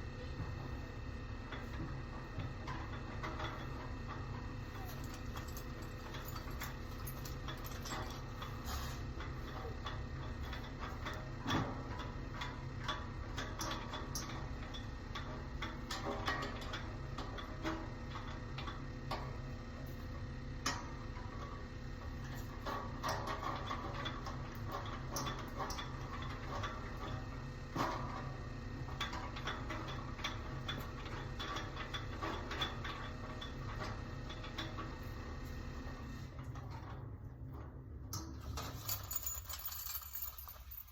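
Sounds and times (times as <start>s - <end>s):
metallic clatter of shelf parts: 38.1s - 40.9s.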